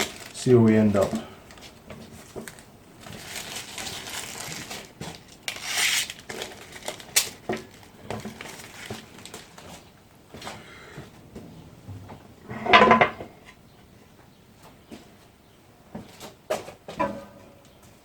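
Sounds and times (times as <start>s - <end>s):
packaging rustling and crinkling: 0.0s - 10.6s
parts knocking when set down: 11.9s - 13.4s, 16.5s - 17.6s.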